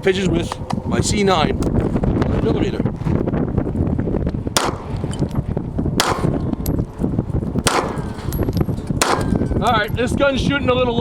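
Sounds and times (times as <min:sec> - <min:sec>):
pistol shots: 0:04.6 - 0:05.0, 0:06.0 - 0:06.5, 0:07.6 - 0:08.4, 0:09.0 - 0:09.5.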